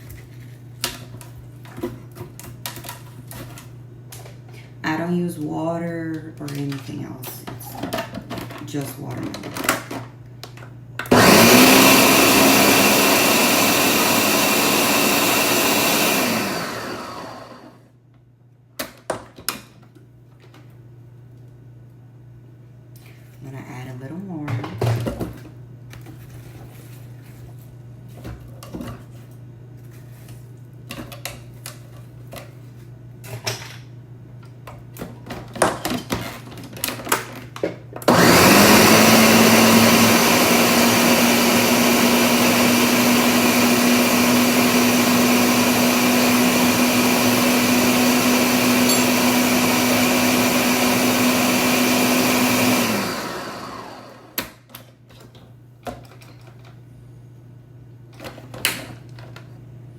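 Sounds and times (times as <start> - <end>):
blender motor running: 11.1 - 17.8, 38.1 - 54.4.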